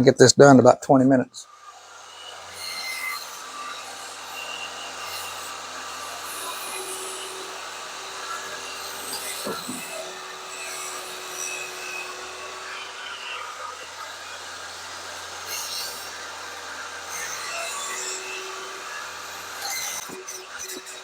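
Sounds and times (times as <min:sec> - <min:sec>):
table saw cutting wood: 0:01.4 - 0:21.0.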